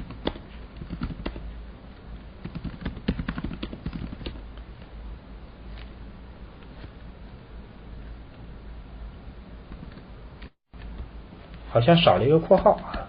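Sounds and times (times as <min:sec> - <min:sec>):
computer keyboard keys tapping: 0:00.0 - 0:01.4, 0:02.4 - 0:04.4
faint low hum: 0:00.0 - 0:13.0.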